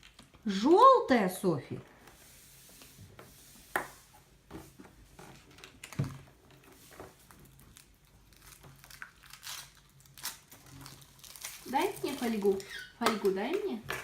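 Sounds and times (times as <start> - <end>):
foil wrapper crinkling: 6.8 - 13.7.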